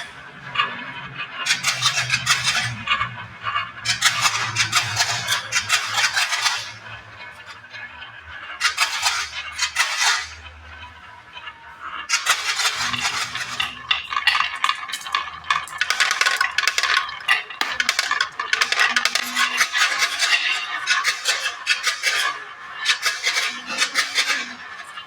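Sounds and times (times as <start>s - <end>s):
marbles clattering on wooden track: 12.1s - 24.7s.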